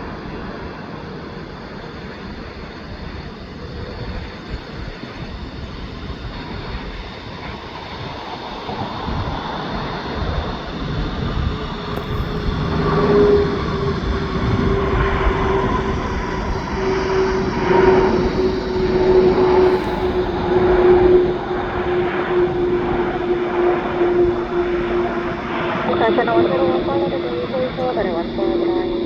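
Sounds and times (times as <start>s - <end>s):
jet engine whine: 0.0s - 29.0s
jet engines rushing: 0.0s - 29.0s.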